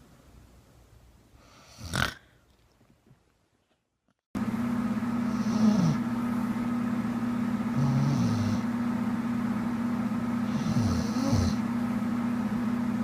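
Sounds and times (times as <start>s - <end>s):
steady low hum: 4.4s - 13.0s
person snoring: 5.3s - 6.0s, 7.7s - 8.7s, 10.4s - 11.6s.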